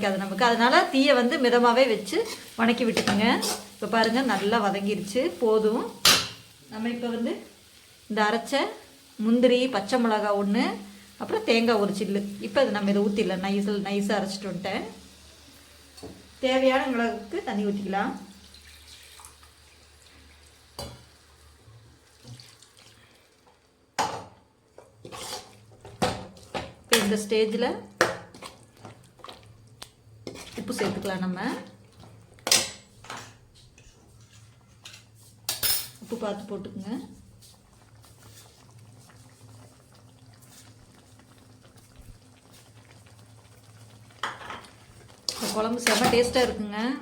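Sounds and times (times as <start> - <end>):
gravy bubbling in a pan: 0.0 - 35.4, 36.0 - 46.2
water poured into a pan: 18.1 - 23.9.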